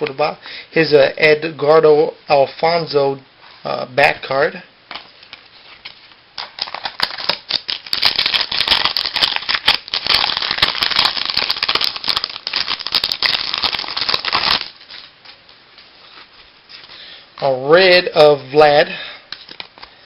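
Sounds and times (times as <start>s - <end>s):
cards being handled: 4.9s - 17.0s, 19.3s - 20.0s
foil wrapper crinkling: 5.7s - 17.0s.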